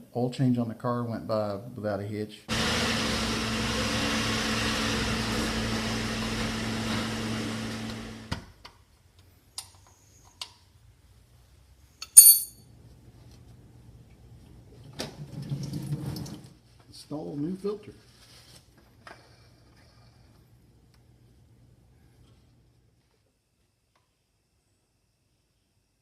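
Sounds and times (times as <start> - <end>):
machine hum: 2.5 - 8.3
sharp metallic clink: 12.0 - 12.6.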